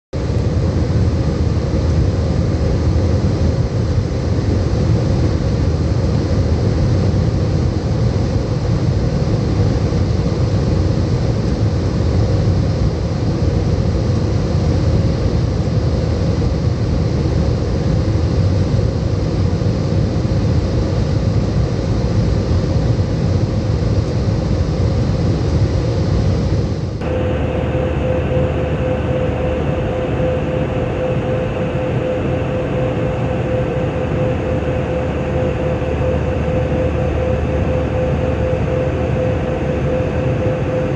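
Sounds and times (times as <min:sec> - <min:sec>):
airliner cabin engine rumble: 0:00.2 - 0:40.9
droning tone: 0:26.5 - 0:40.9.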